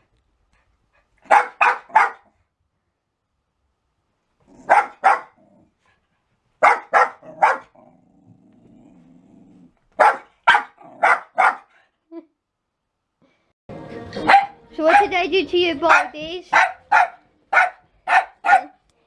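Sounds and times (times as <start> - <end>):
small dog barking: 1.2 - 2.4, 4.6 - 5.4, 6.6 - 7.8, 10.0 - 11.7, 14.2 - 15.1, 15.9 - 18.8
dog growling: 4.4 - 4.7, 5.4 - 5.8, 7.2 - 9.8.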